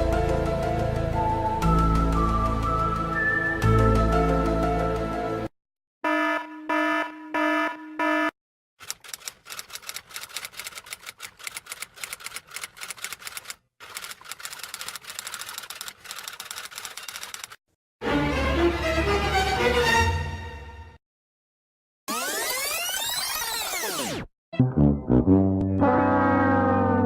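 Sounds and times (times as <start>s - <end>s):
electronic buzzer tone: 6.0s - 8.4s
rapid typing clicks: 8.8s - 17.6s.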